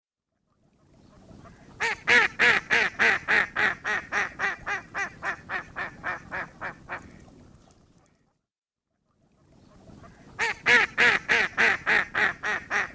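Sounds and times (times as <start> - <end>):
duck quacking: 1.4 - 7.1, 10.0 - 12.9.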